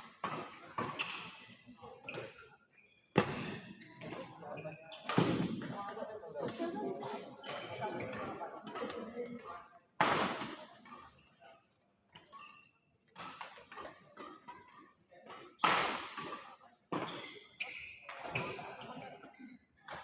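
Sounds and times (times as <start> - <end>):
racket hitting shuttlecock: 13.2 - 17.3.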